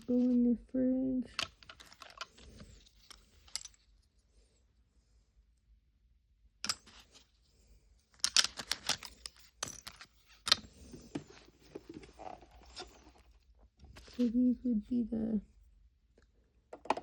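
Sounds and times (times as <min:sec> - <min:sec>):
plastic toy pieces clicking: 0:01.3 - 0:03.8, 0:08.2 - 0:10.7.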